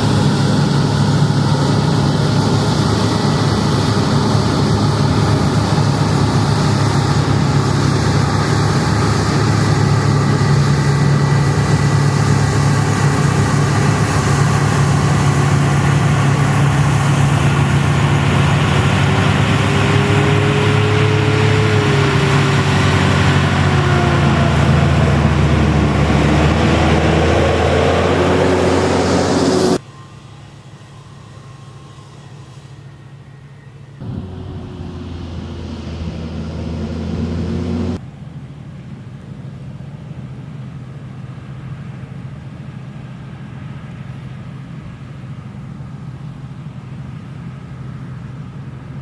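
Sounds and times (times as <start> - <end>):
thin whine: 0.0 - 38.0
diesel engine running under load: 0.0 - 49.0.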